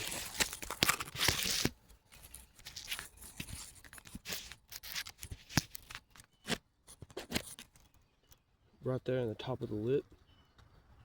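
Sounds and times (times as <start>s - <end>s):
rustling and scratching: 0.0s - 8.1s.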